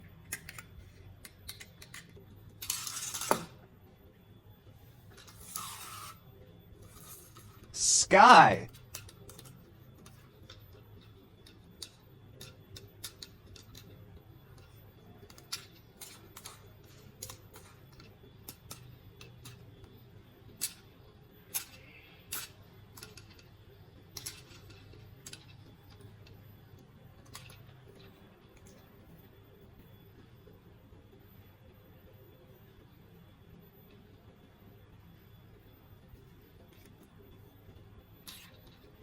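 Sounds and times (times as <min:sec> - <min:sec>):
plastic toys and packaging clicking: 0:00.2 - 0:03.4, 0:10.1 - 0:14.0, 0:14.6 - 0:19.6, 0:24.1 - 0:25.6, 0:27.2 - 0:27.6.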